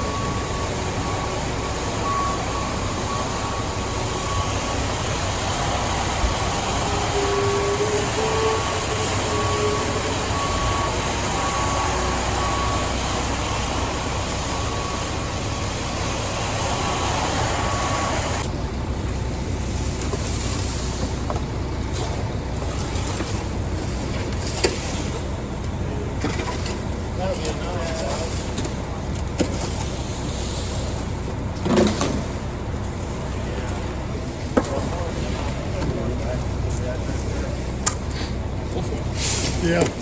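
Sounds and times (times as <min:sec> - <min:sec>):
backup alarm beeping: 0:00.0 - 0:18.5
heavy vehicle engine running: 0:00.0 - 0:40.0.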